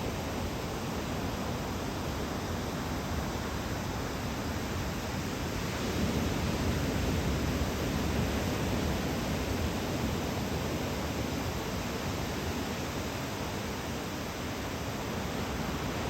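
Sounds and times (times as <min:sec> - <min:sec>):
ocean surf breaking on beach: 0:04.8 - 0:16.0.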